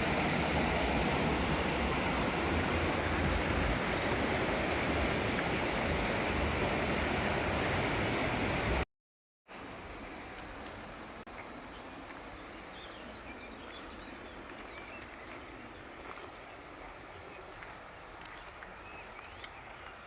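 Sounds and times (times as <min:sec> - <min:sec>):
river water rushing over rocks: 0:00.0 - 0:08.8
quiet forest ambience: 0:09.5 - 0:20.0.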